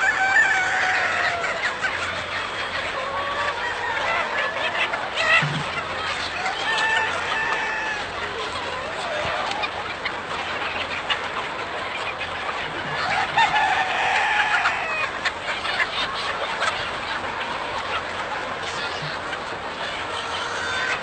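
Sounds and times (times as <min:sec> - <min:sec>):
rising and falling chicken call: 0:00.0 - 0:01.8, 0:06.3 - 0:08.2
flock of chickens clucking: 0:00.0 - 0:21.0.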